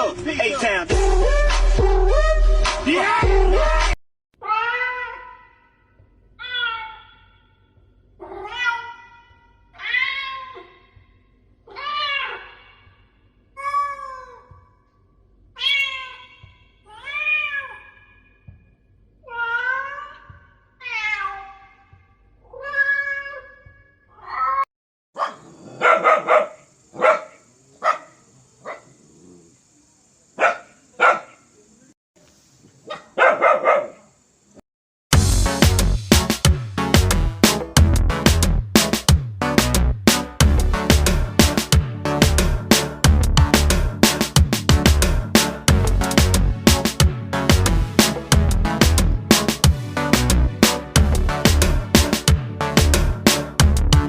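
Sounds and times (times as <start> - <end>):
cat meowing: 4.4 - 5.4, 6.4 - 7.3, 8.2 - 10.8, 15.6 - 18.0, 19.3 - 21.7, 22.4 - 24.6.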